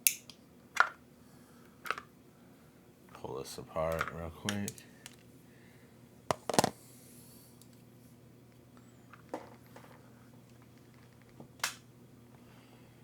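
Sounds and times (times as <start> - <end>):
faint steady hum: 0.0 - 13.0
plastic parts clicking and knocking: 1.8 - 2.1, 3.9 - 5.2, 6.3 - 6.7.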